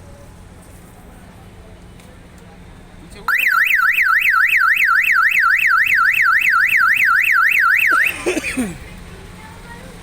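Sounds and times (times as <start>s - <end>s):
car alarm siren warbling: 3.3s - 8.3s.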